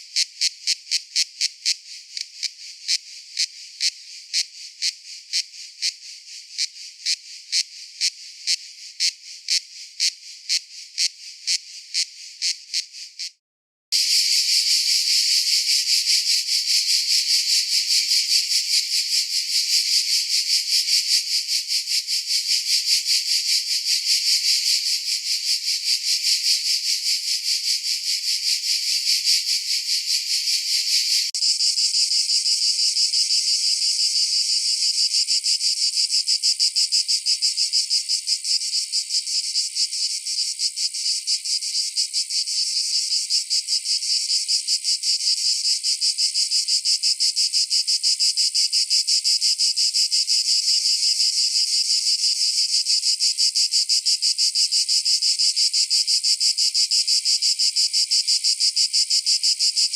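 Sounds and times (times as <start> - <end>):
cicadas buzzing: 14.0 - 44.4.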